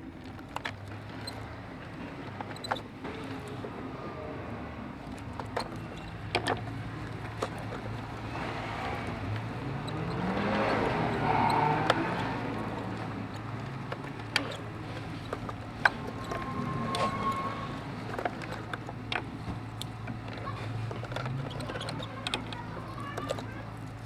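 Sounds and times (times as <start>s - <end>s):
car engine running: 0.0s - 24.0s
sharp engine clicks: 5.0s - 24.0s.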